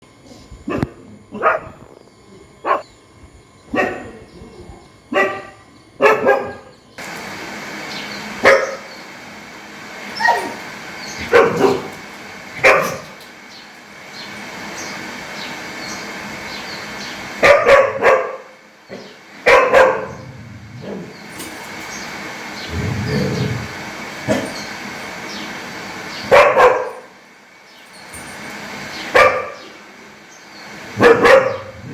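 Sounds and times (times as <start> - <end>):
dog barking: 0.7 - 1.9, 2.6 - 2.9, 3.7 - 4.2, 5.1 - 6.7, 8.4 - 8.9, 11.2 - 12.0, 12.6 - 13.2, 17.4 - 20.2, 26.3 - 27.1, 29.1 - 29.7, 31.0 - 31.9
steady hiss: 7.0 - 17.4.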